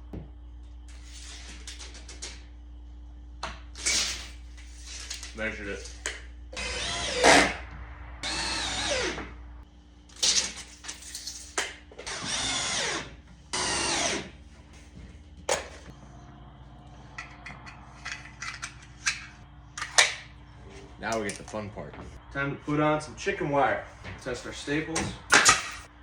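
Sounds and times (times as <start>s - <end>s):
power drill driving screws into wood: 6.6s - 7.6s, 12.0s - 14.3s.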